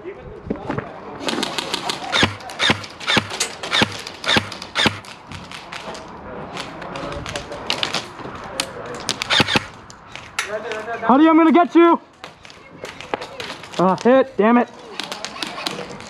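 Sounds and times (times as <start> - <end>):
airsoft gun shots: 2.0 - 5.1, 9.2 - 9.8.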